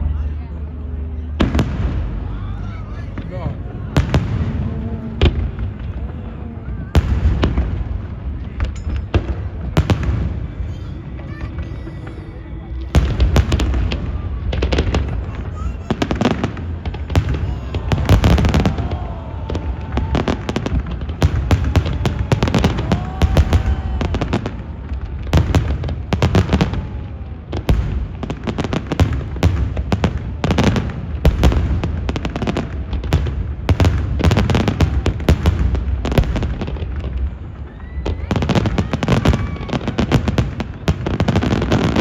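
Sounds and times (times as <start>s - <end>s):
deep booms: 1.3s - 2.4s
fireworks bursting: 1.3s - 42.0s
fireworks crackle: 1.4s - 42.0s.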